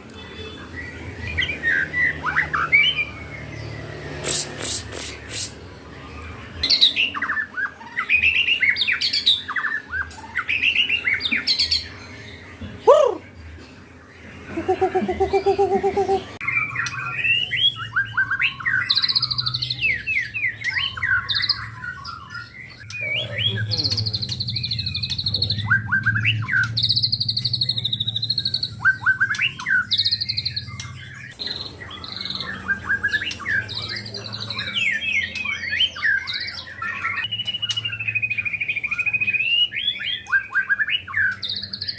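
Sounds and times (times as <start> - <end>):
songbird singing whistles and trills: 14.5 - 41.9.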